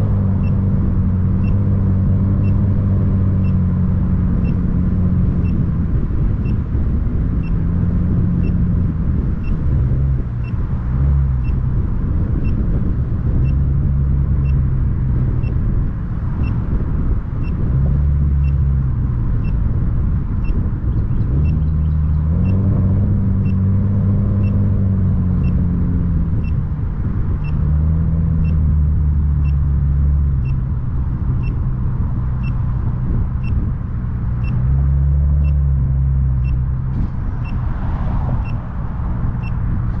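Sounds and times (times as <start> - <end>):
car engine and road rumble: 0.0 - 40.0
short high-pitched beeps: 8.4 - 8.6, 16.4 - 16.6, 18.4 - 18.6, 34.4 - 34.6, 35.4 - 35.6.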